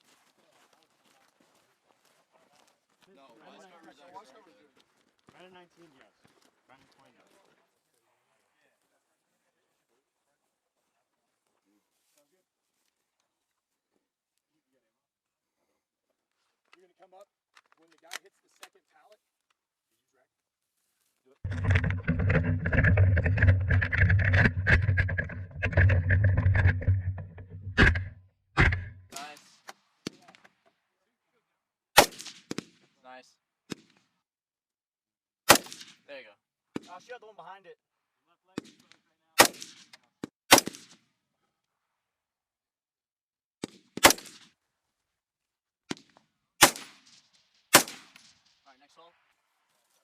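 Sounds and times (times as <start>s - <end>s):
sharp clicks and rattles: 21.5s - 29.0s
rifle shots echoing: 47.7s - 48.2s.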